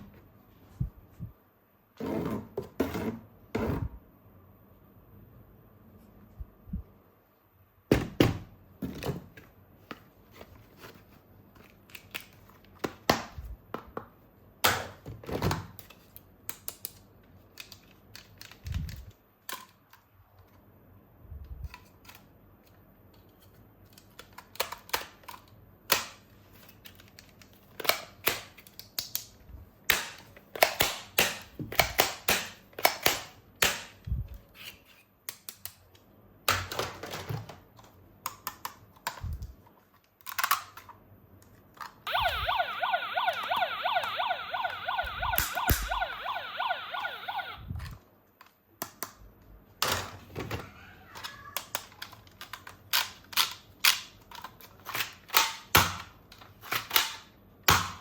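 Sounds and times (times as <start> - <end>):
plastic toy parts clicking: 23.4 - 29.3, 40.2 - 41.0, 51.2 - 57.2.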